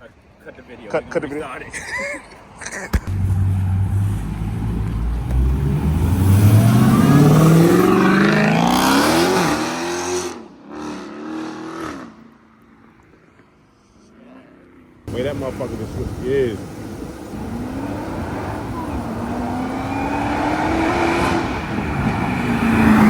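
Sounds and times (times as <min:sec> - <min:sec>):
car engine accelerating hard: 0:03.0 - 0:11.1, 0:15.1 - 0:23.0.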